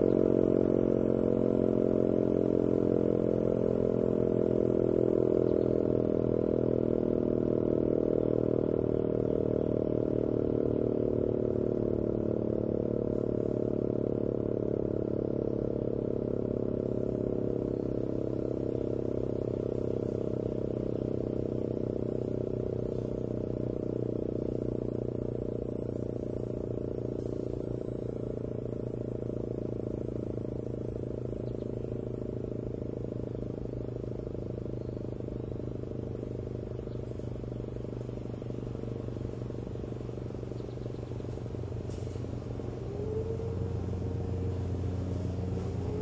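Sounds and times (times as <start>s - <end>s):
distant sirens: 9.6s - 46.0s
warning siren wailing: 42.2s - 46.0s.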